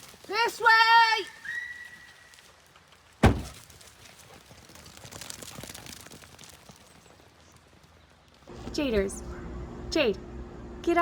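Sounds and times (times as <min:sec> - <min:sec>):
sharp thunk: 0:03.2 - 0:03.6.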